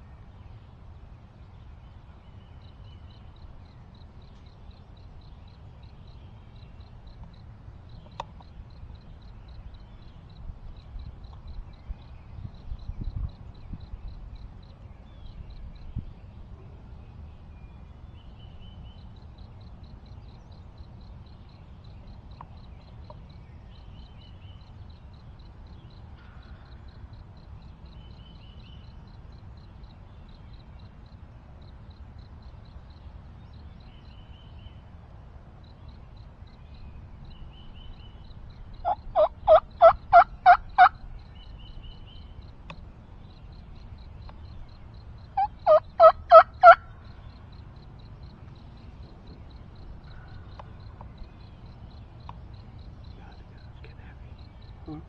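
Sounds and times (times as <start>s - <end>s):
low steady rumble: 0.0s - 55.0s
turkey yelping: 38.8s - 40.9s, 45.4s - 46.8s.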